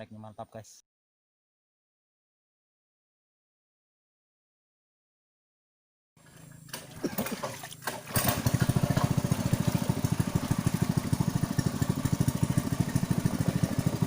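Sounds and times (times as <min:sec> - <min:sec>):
small engine chugging: 0:06.2 - 0:14.0.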